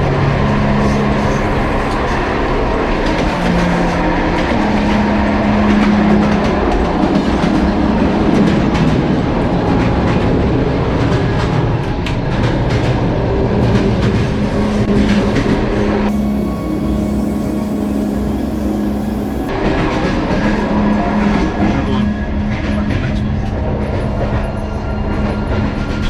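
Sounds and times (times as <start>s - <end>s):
train rumbling on rails: 0.0s - 15.4s.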